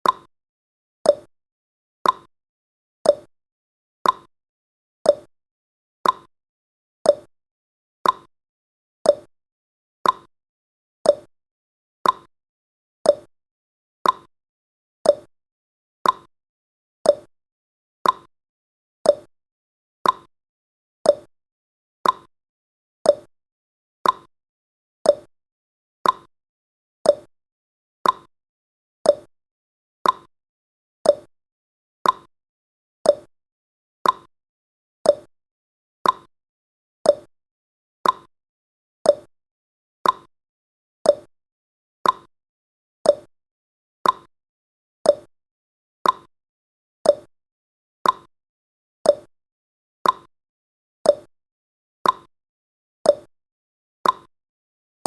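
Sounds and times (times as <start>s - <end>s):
clock tick-tock: 0.0s - 0.3s, 1.1s - 1.3s, 2.0s - 2.3s, 3.0s - 3.3s, 4.0s - 4.3s, 5.1s - 5.3s, 6.0s - 6.3s, 7.1s - 7.3s, 8.0s - 8.3s, 9.1s - 9.3s, 10.0s - 10.3s, 11.1s - 11.3s, 12.0s - 12.3s, 13.0s - 13.3s, 14.0s - 14.3s, 15.0s - 15.3s, 16.0s - 16.3s, 17.0s - 17.3s, 18.0s - 18.3s, 19.0s - 19.3s, 20.0s - 20.3s, 21.0s - 21.3s, 22.0s - 22.3s, 23.0s - 23.3s, 24.0s - 24.3s, 25.0s - 25.3s, 26.0s - 26.3s, 27.0s - 27.3s, 28.0s - 28.3s, 29.0s - 29.3s, 30.0s - 30.3s, 31.0s - 31.3s, 32.0s - 32.3s, 33.0s - 33.3s, 34.0s - 34.3s, 35.0s - 35.3s, 36.0s - 36.3s, 37.0s - 37.3s, 38.0s - 38.3s, 39.0s - 39.3s, 40.0s - 40.3s, 41.0s - 41.3s, 42.0s - 42.3s, 43.0s - 43.3s, 44.0s - 44.3s, 45.0s - 45.3s, 46.0s - 46.3s, 47.0s - 47.3s, 48.0s - 48.3s, 49.0s - 49.3s, 50.0s - 50.3s, 51.1s - 51.3s, 52.0s - 52.3s, 53.1s - 53.3s, 54.0s - 54.3s.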